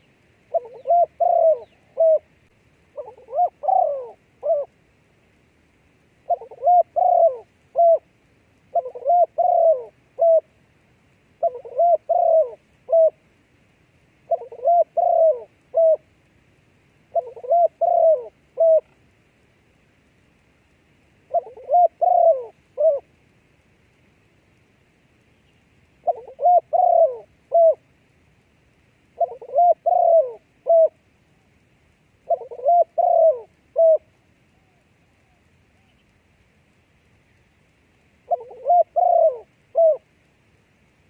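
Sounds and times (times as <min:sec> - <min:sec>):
dove cooing: 0:00.0 - 0:02.3, 0:02.9 - 0:04.8, 0:06.2 - 0:08.1, 0:08.7 - 0:10.5, 0:11.4 - 0:13.2, 0:14.3 - 0:16.1, 0:17.1 - 0:19.0, 0:21.3 - 0:23.1, 0:26.0 - 0:27.9, 0:29.2 - 0:31.0, 0:32.2 - 0:36.1, 0:38.2 - 0:40.1.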